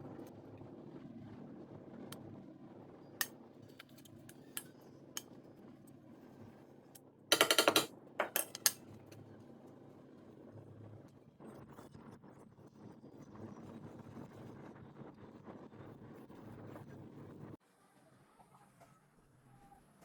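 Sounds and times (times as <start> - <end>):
utensils clattering: 7.3 - 8.8.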